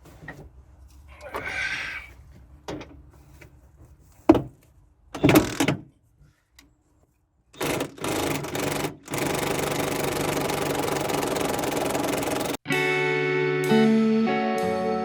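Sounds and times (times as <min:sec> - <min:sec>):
power tool motor running: 0:07.6 - 0:12.6.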